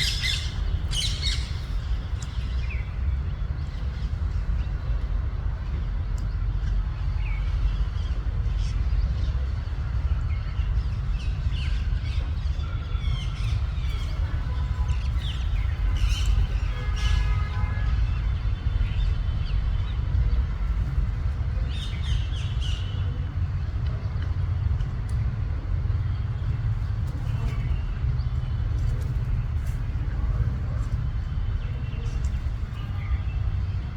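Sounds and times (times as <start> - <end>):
parrots calling: 0.0 - 1.8
steady low rumble: 0.0 - 16.9, 18.1 - 33.9.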